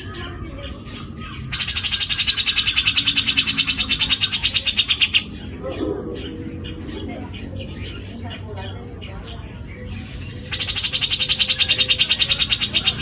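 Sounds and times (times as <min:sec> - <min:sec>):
bird chattering rattle: 0:01.0 - 0:06.5, 0:10.0 - 0:13.0.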